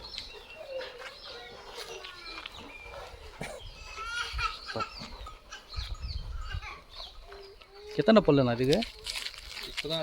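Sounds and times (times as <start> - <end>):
chickens clucking: 0.0 - 7.9
small birds chirping: 0.0 - 10.0.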